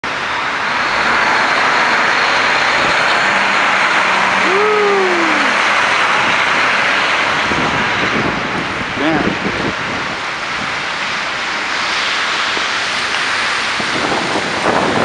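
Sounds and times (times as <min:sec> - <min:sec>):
traffic on slushy road: 0:00.0 - 0:15.0
rising and falling tone: 0:01.4 - 0:06.3.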